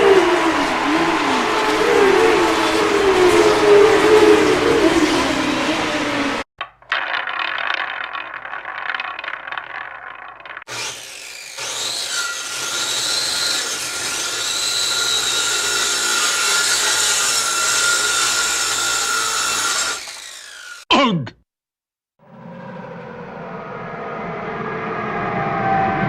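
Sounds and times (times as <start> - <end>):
power tool whining: 0.0 - 6.4, 10.6 - 20.9
rough scraping like sawing: 0.0 - 6.4.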